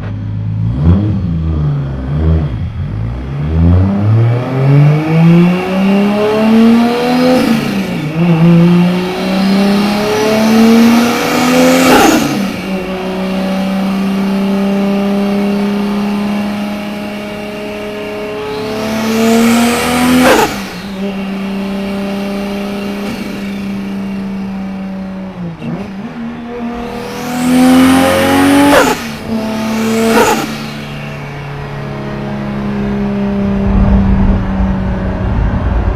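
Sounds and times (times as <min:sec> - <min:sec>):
turbocharged car engine revving: 0:00.0 - 0:35.9.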